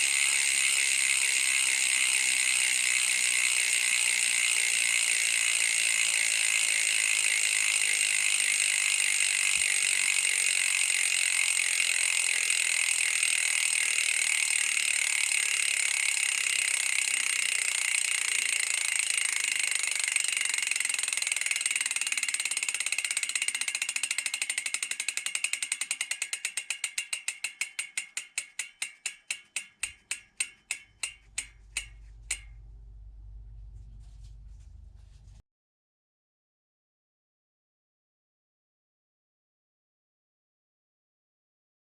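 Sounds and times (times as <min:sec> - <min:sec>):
bicycle hub freewheel ratcheting: 0:00.0 - 0:32.8.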